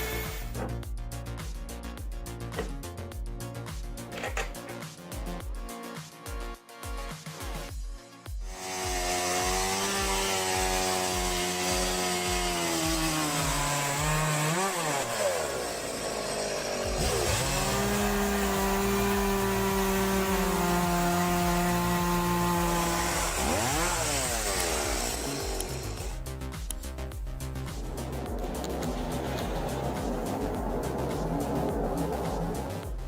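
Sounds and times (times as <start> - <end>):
chainsaw cutting wood: 0.0 - 0.8, 8.5 - 26.9.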